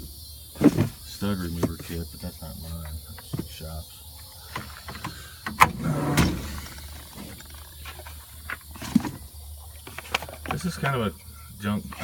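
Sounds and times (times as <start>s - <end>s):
drawer knocking to a stop: 4.6s - 7.4s
metal drawer sliding with rattle: 4.7s - 7.6s.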